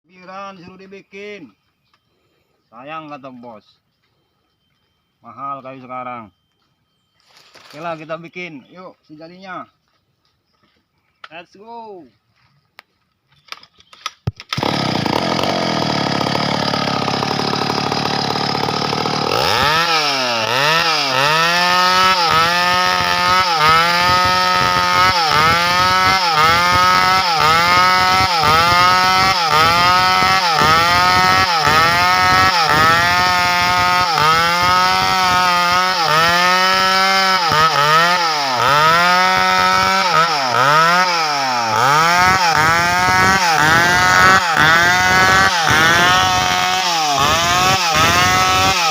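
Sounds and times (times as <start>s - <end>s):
chainsaw cutting wood: 14.2s - 48.9s.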